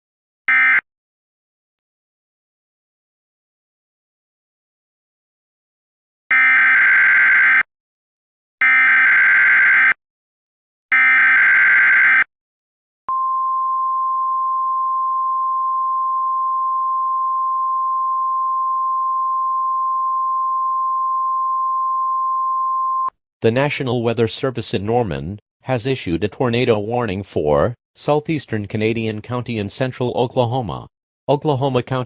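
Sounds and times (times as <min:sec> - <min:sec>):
steady warning alarm tone: 0:00.5 - 0:00.8, 0:06.3 - 0:07.7, 0:08.6 - 0:10.0, 0:10.9 - 0:12.3.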